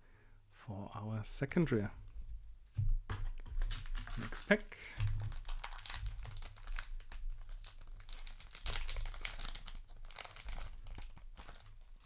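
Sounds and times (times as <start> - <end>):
wrapper tearing and crinkling: 3.5 - 12.0.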